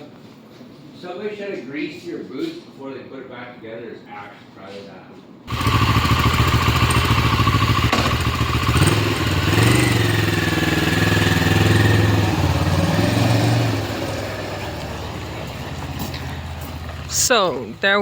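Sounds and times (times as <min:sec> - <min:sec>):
motorcycle engine revving: 0:05.5 - 0:17.8.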